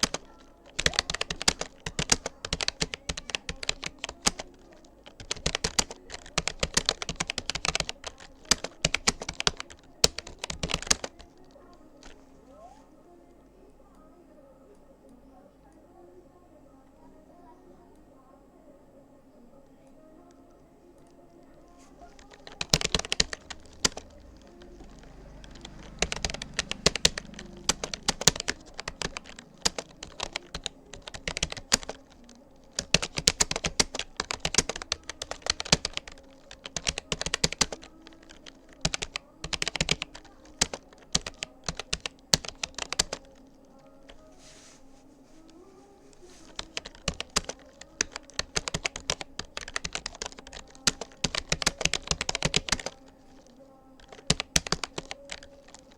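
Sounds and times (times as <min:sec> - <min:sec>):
keyboard typing clicks: 0:00.0 - 0:12.2, 0:22.0 - 0:44.3, 0:46.4 - 0:55.9.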